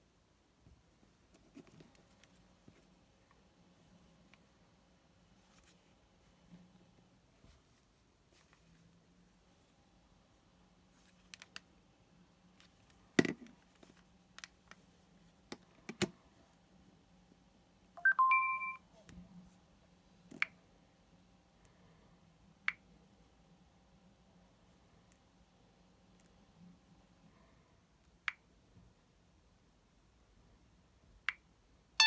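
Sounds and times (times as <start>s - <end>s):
faint steady hum: 0.0s - 32.0s
short electronic beep: 18.0s - 18.8s.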